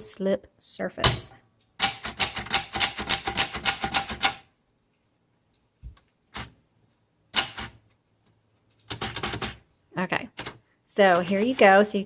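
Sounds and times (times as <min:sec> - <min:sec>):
typewriter typing: 0:01.8 - 0:04.4, 0:07.3 - 0:07.8, 0:08.9 - 0:09.6, 0:10.4 - 0:11.8.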